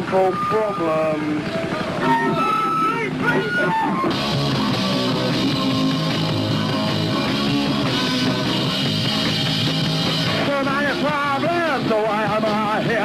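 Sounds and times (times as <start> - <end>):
punk rock band playing live: 0.0 - 13.0.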